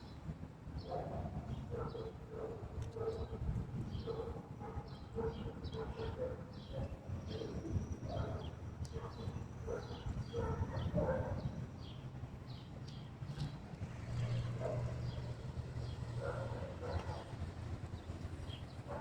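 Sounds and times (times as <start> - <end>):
birds chirping: 14.4 - 19.0.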